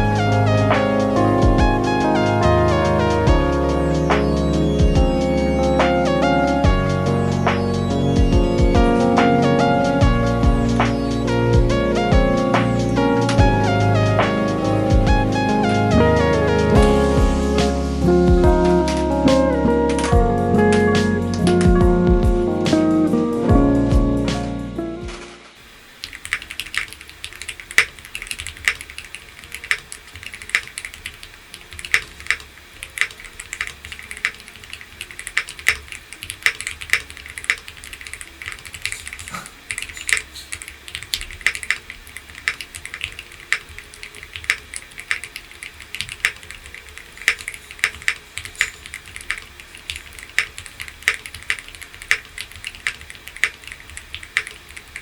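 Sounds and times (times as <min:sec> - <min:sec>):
mechanical keyboard typing: 0:26.0 - 0:55.0.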